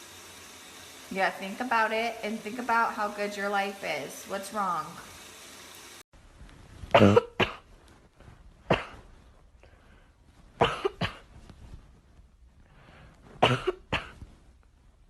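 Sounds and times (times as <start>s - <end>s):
short sharp coughs: 7.0s - 7.7s, 8.7s - 9.0s.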